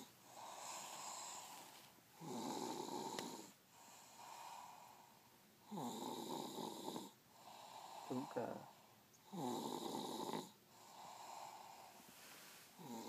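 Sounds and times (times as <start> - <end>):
person snoring: 0.0 - 5.0, 9.3 - 11.9, 12.8 - 13.0
quiet breathing: 0.0 - 13.0.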